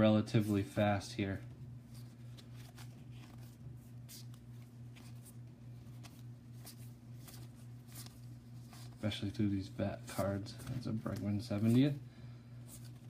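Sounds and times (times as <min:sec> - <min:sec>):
steady low hum: 0:00.0 - 0:13.0
trading cards flipping: 0:01.8 - 0:09.0, 0:10.1 - 0:11.9.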